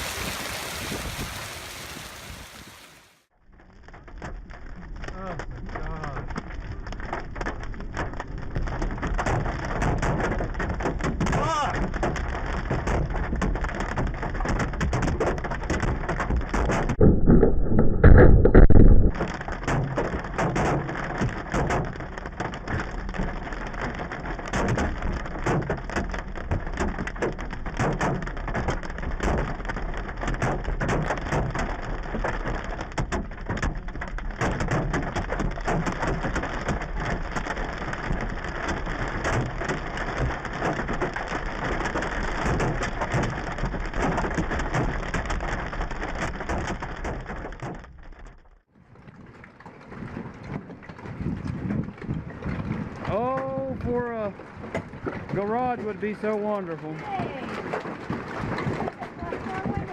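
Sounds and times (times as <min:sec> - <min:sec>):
rushing of falling ice and rain: 0:00.0 - 0:49.0, 0:52.6 - 0:54.7, 0:55.3 - 0:59.9
hail rattling on hard surfaces: 0:03.7 - 0:48.5, 0:55.3 - 0:59.9
loud low rumble: 0:16.9 - 0:19.2.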